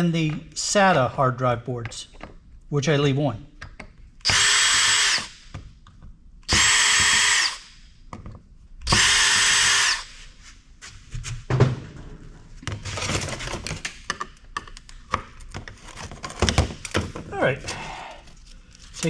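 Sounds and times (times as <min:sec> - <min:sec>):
electric screwdriver running: 0:04.2 - 0:05.3, 0:06.5 - 0:07.6, 0:08.9 - 0:10.1.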